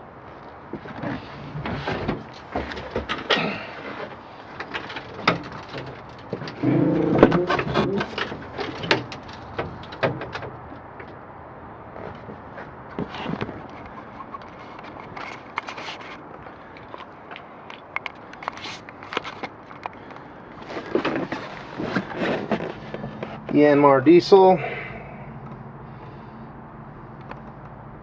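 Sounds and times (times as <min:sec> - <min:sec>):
clicks and knocks of boat fittings: 0:02.0 - 0:11.2, 0:12.9 - 0:20.3
low moaning tone: 0:06.6 - 0:08.1.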